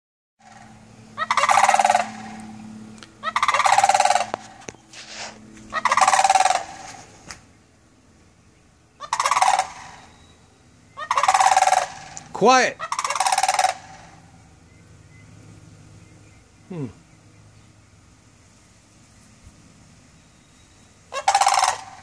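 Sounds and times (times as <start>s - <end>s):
turkeys gobbling: 0.4s - 2.6s, 3.2s - 7.2s, 9.0s - 10.1s, 11.0s - 14.3s, 21.1s - 22.0s.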